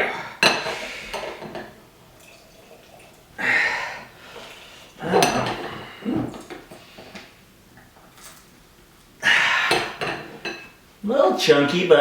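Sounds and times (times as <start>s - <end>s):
kitchenware clattering and scraping: 0.4s - 3.2s, 4.4s - 7.2s, 9.7s - 10.8s.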